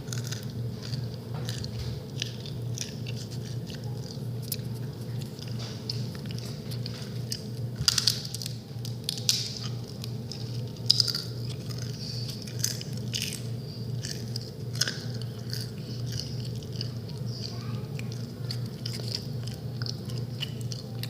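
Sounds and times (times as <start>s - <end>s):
crunchy food being chewed: 0.0s - 21.0s
steady low hum: 0.0s - 21.0s.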